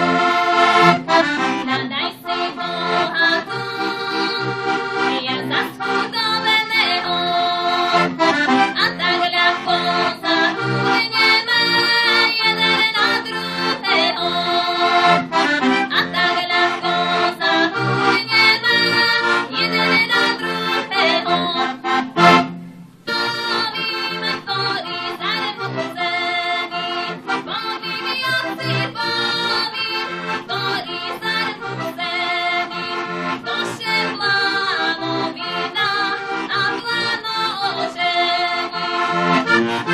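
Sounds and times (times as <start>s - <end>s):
button accordion playing folk tune: 0.0s - 39.9s.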